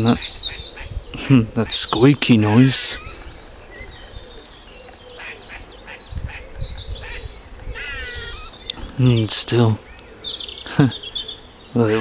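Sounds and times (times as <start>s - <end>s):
squirrel squeaky alarm calls: 0.0s - 1.7s, 5.0s - 8.8s.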